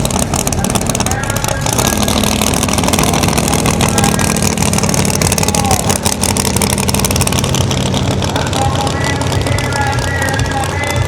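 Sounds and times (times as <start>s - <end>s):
race car engines running loudly: 0.0s - 11.0s.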